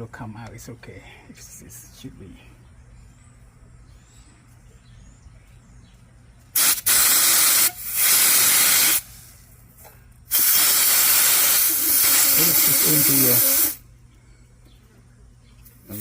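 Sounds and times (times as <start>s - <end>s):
low steady hum: 0.0s - 6.6s, 9.0s - 10.3s, 13.7s - 16.0s
gas hissing from hose: 6.6s - 9.3s, 10.3s - 13.8s.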